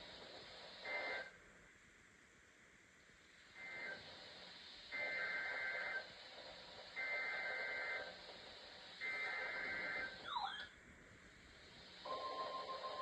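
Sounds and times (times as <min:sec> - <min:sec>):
buzzy two-tone digital data bursts: 0:09.0 - 0:10.7.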